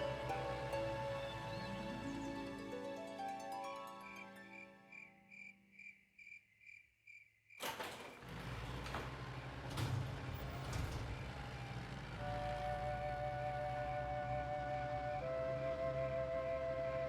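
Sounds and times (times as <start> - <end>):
crickets chirping: 3.6 - 7.6.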